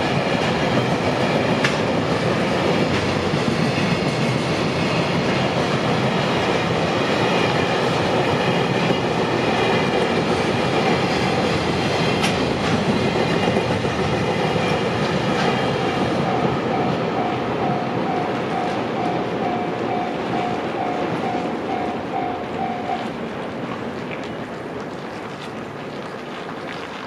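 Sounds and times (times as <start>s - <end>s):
train wagons clacking over rails: 0.0s - 27.0s
crossing warning bell: 15.6s - 23.2s.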